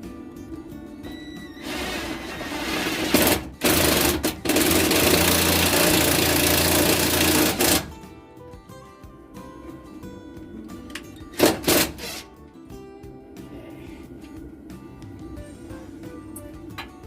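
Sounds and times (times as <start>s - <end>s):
drill driving screw into metal: 1.6s - 7.9s, 11.4s - 12.3s.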